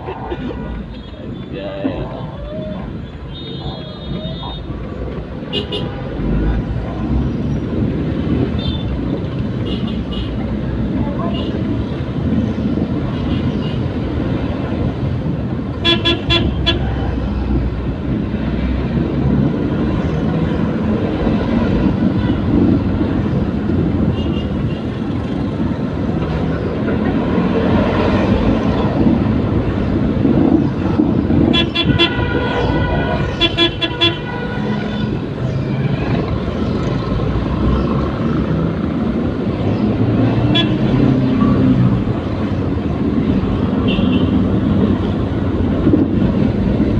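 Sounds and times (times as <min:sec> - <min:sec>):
engine and road noise: 0:00.0 - 0:46.9
vehicle horn beeping: 0:15.8 - 0:16.9, 0:31.5 - 0:35.2, 0:40.5 - 0:40.9.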